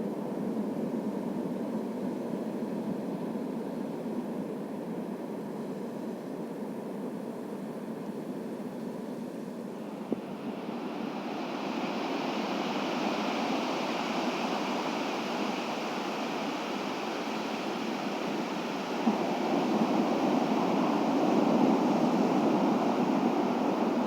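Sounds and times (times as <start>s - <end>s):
breaking waves on a beach: 9.8s - 24.0s.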